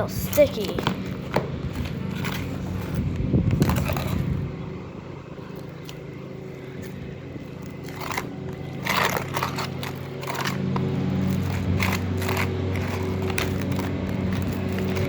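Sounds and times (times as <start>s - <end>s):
steady low hum: 0.0s - 15.0s
slime squelching: 5.5s - 15.0s.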